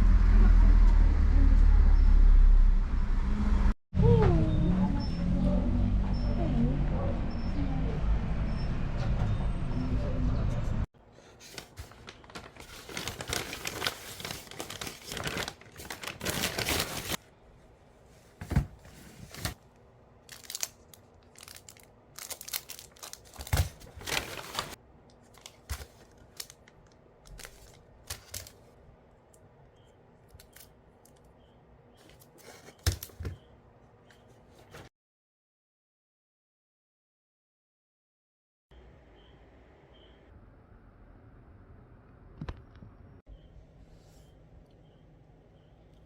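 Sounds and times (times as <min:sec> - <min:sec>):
rustles of handling: 0:11.2 - 0:17.2, 0:20.3 - 0:28.7
wrapping torn and crumpled: 0:11.4 - 0:17.2, 0:20.2 - 0:28.6.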